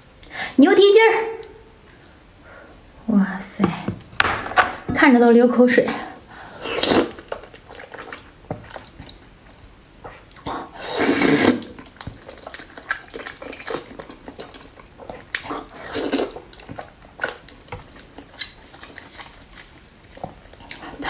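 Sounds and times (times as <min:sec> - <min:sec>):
loud slurps: 0:06.6 - 0:07.2, 0:10.8 - 0:11.9
person chewing and lip-smacking: 0:11.6 - 0:19.0.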